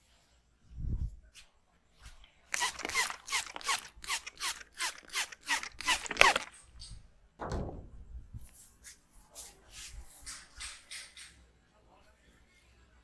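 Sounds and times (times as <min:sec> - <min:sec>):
dull thump: 0:07.4 - 0:08.1.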